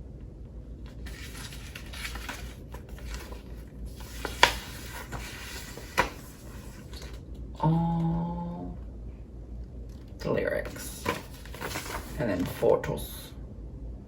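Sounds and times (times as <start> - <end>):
paper pages rustling: 0.8 - 7.2, 10.0 - 12.9.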